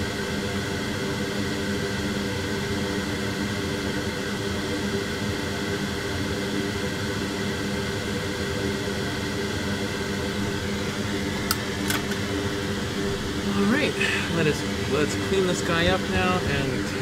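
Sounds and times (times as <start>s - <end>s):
constant hum: 0.0s - 17.0s
blower rushing air: 10.3s - 17.0s.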